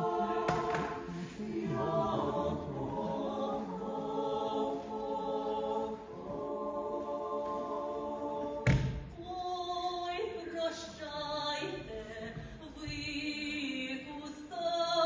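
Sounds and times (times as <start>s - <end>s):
choir singing in harmony: 0.0s - 9.1s
sharp thump: 8.6s - 9.1s.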